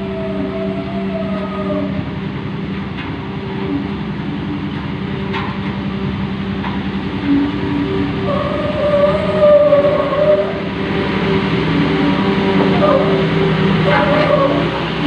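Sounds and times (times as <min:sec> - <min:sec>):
road roller diesel engine running: 0:00.0 - 0:15.0.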